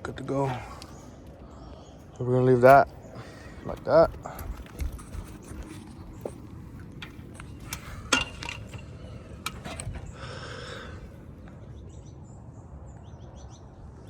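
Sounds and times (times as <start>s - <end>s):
low outdoor rumble: 0.0s - 14.0s
sharp clicks and knocks: 4.4s - 10.1s.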